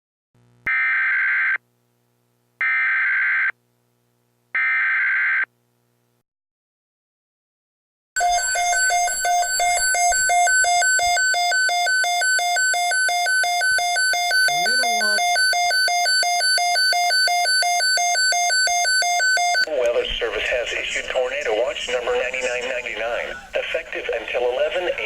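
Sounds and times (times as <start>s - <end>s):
radio alarm rapid beeps: 8.2s - 19.7s.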